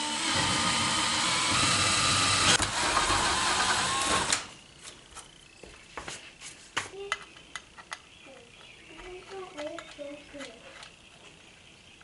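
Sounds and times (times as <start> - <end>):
cordless drill running: 0.0 - 4.6.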